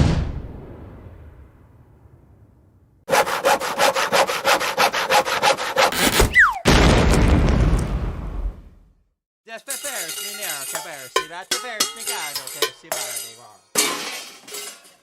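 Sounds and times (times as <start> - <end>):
loud crash: 0.0 - 2.6, 6.6 - 8.7
cartoon sawing: 3.1 - 6.6
falling whistle: 6.3 - 6.7.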